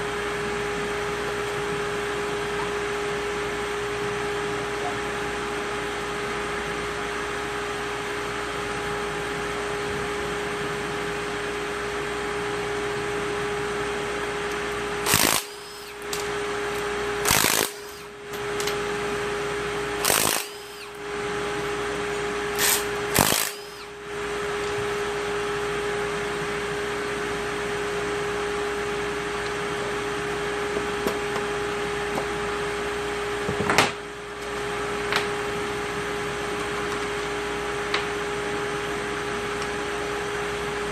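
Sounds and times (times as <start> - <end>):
steady hum: 0.0 - 40.9
power tool running in bursts: 14.9 - 21.6, 22.4 - 24.1.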